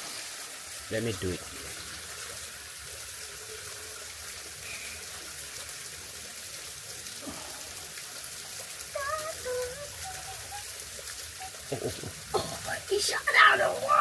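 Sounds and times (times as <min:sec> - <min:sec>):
stream water trickling and splashing: 0:00.0 - 0:14.0
person exclaiming: 0:11.7 - 0:14.0.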